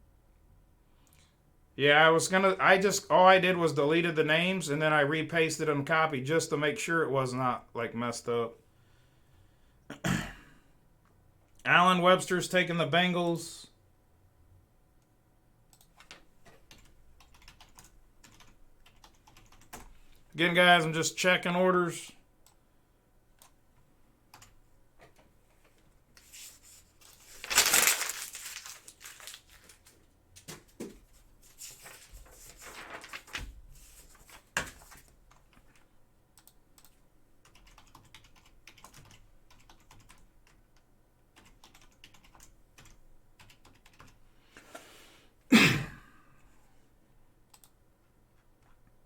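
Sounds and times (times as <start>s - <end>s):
computer keyboard typing: 15.7s - 19.9s, 24.3s - 25.2s, 34.8s - 40.6s, 41.4s - 44.2s.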